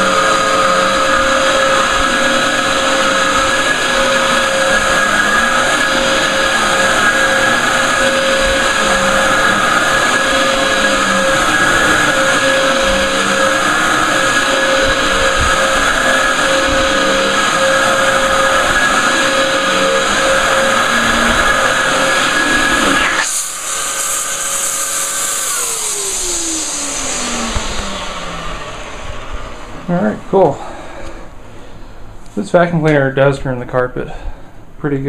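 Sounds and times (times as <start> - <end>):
vacuum motor winding down: 0.0 - 31.4
vacuum cleaner motor whine: 0.0 - 32.2.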